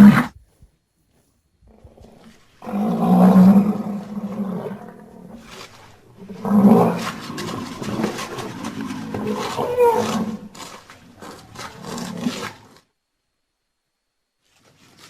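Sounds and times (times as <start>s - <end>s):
large animal roaring: 1.7s - 12.8s.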